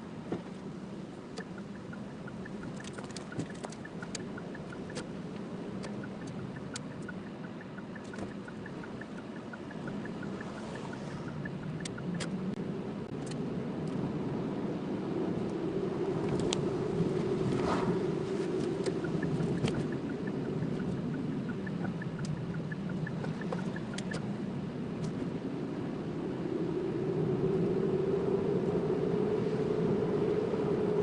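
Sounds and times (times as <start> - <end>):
car cabin road and engine noise: 0.0 - 31.0
light regular ticking: 1.2 - 12.6, 18.5 - 24.3
sharp clicks: 1.3 - 5.2, 5.8 - 12.5, 18.6 - 24.2.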